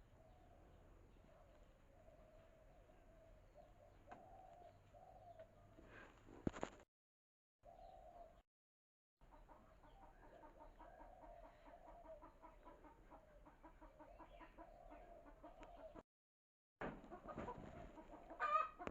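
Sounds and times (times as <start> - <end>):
chicken clucking rapidly: 9.2 - 16.0, 17.0 - 18.9.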